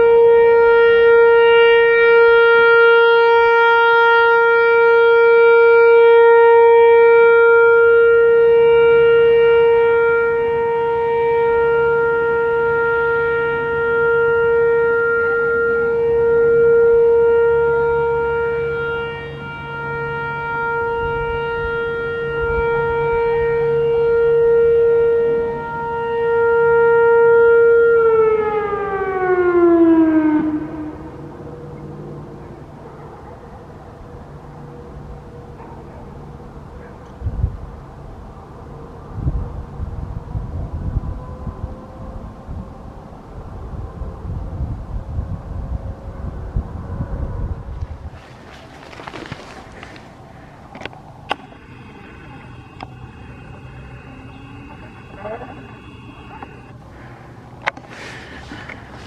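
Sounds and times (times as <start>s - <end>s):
warning siren steady tone: 0.0s - 31.9s, 40.5s - 42.9s, 50.7s - 59.0s.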